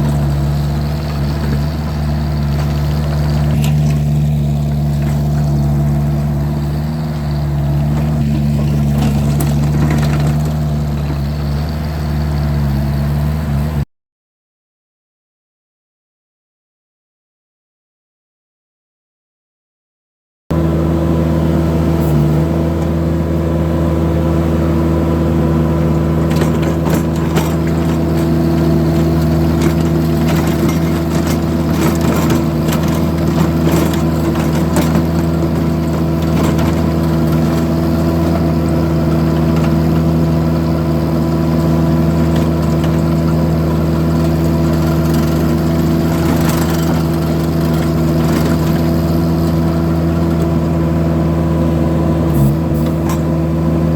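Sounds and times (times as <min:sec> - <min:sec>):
loader engine running: 0:00.0 - 0:13.9, 0:20.5 - 0:53.9
clicks and rattles: 0:07.8 - 0:11.2, 0:26.3 - 0:40.2, 0:41.5 - 0:50.8.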